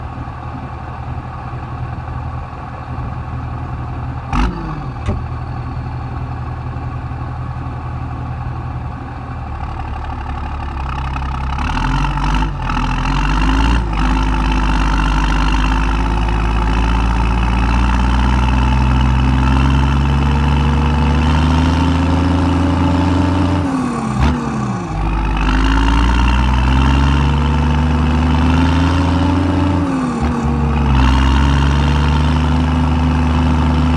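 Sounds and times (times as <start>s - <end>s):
tractor engine idling and revving: 0.0s - 33.9s
sharp engine knocks: 5.0s - 5.4s.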